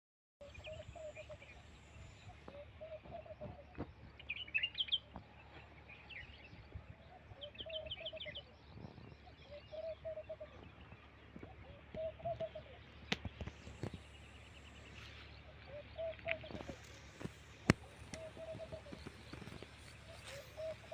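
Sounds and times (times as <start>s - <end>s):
low bird call: 0.4s - 20.9s
high bird chirps: 11.8s - 20.9s.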